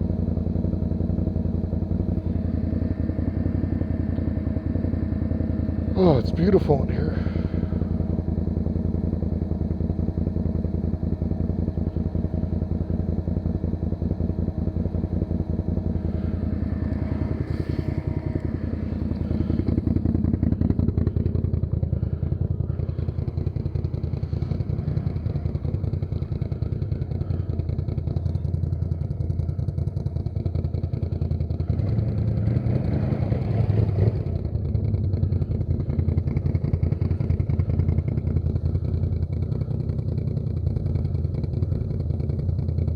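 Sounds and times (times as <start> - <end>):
quad bike engine revving: 15.7 - 29.9, 30.8 - 40.0.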